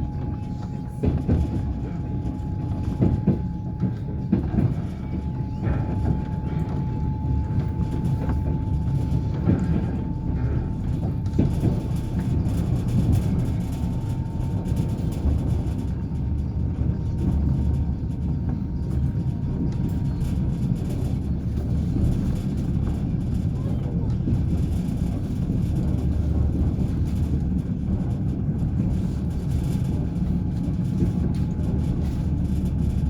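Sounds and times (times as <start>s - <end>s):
train wheels rumbling on rails: 0.0s - 33.0s.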